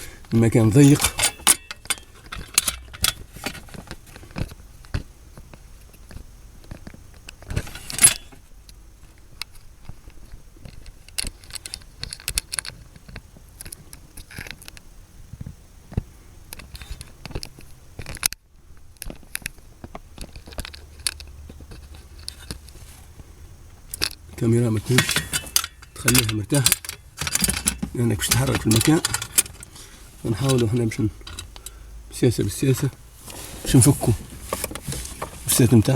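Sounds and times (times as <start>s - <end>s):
small metal tools clinking: 0.4s - 3.7s, 23.9s - 29.7s.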